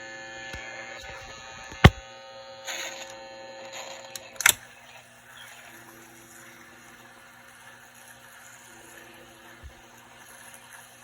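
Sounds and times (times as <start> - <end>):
mains hum: 0.0 - 11.0
tape player mechanical click: 4.1 - 4.7.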